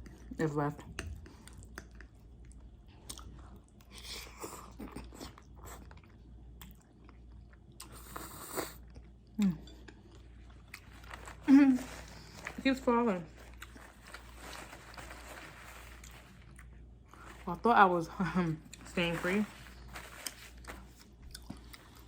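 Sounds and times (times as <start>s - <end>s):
close-miked chewing: 1.0s - 12.4s, 19.8s - 22.0s.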